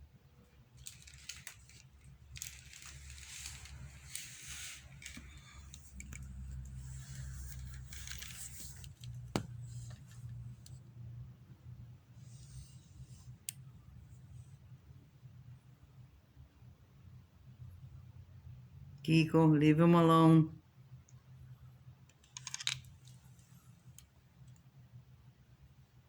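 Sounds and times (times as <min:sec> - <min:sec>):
cats scuffling: 0:00.8 - 0:10.4.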